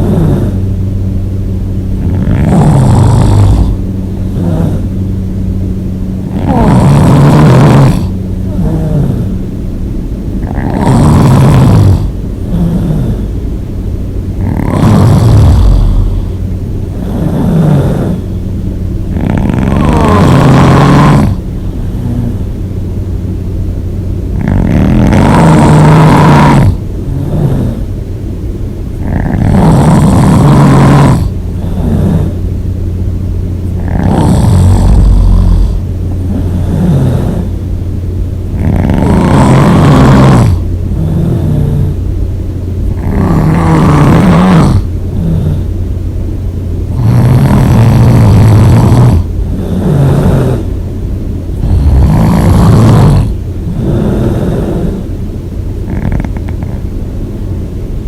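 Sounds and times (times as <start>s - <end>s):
person snoring loudly: 0.0s - 0.7s, 2.0s - 5.0s, 6.2s - 9.4s, 10.3s - 13.4s, 14.4s - 18.4s, 19.1s - 22.6s, 24.3s - 27.9s, 29.0s - 32.4s, 33.6s - 37.6s, 38.5s - 42.0s, 42.8s - 45.8s, 46.9s - 50.7s, 51.6s - 55.1s, 55.8s - 56.9s
quiet breathing: 0.0s - 0.8s, 6.3s - 9.5s, 11.7s - 13.5s, 14.3s - 22.7s, 26.7s - 28.0s, 31.2s - 32.5s, 42.8s - 45.9s, 51.6s - 55.2s.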